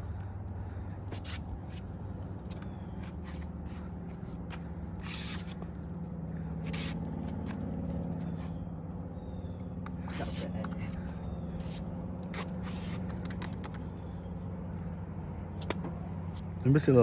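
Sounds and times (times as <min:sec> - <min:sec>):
steady low hum: 0:00.0 - 0:17.0
spray paint can hissing: 0:06.7 - 0:07.0.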